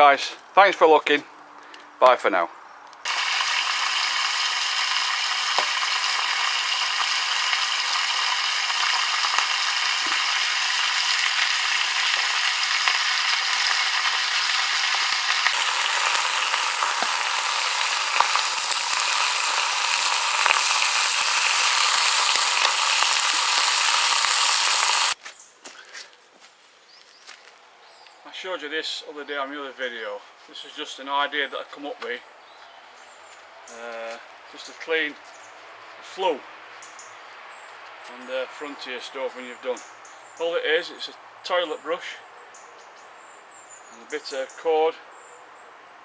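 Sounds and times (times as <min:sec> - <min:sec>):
water boiling hard: 0:03.1 - 0:25.2.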